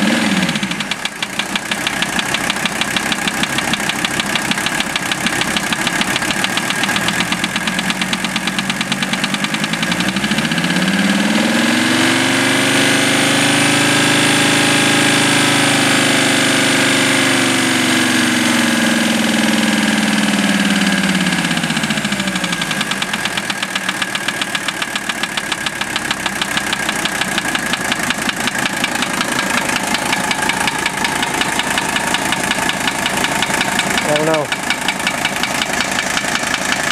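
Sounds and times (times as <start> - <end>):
diesel engine idling and revving: 0.0 - 36.9.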